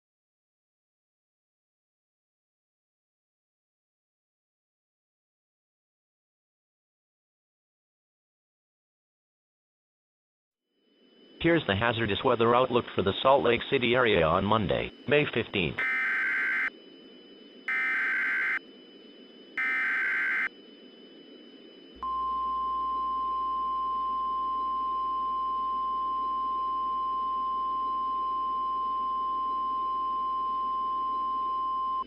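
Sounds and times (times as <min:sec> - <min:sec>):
steady high alarm tone: 0:14.9 - 0:22.1
warbling data tones: 0:15.8 - 0:16.7, 0:17.7 - 0:18.6, 0:19.6 - 0:20.5.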